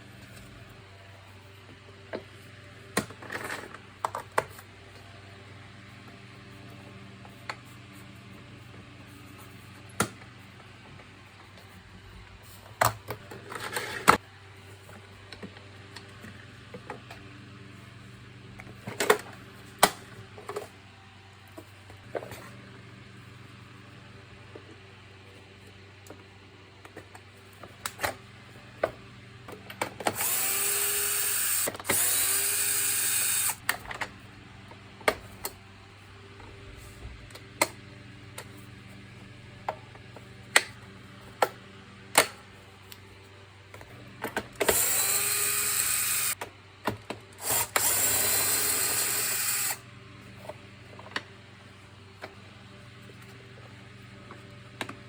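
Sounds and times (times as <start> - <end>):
electric screwdriver whining: 30.1 - 33.6, 44.6 - 46.4, 47.4 - 49.8.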